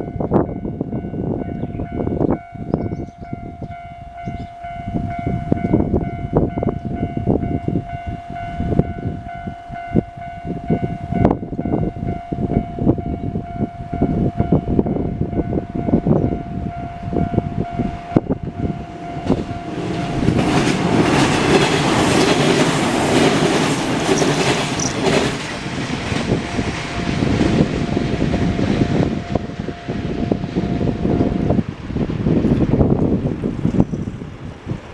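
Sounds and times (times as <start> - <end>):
train rumble: 0.0 - 34.9
level crossing alarm ringing: 3.4 - 20.4
train wheels clacking: 18.9 - 29.4.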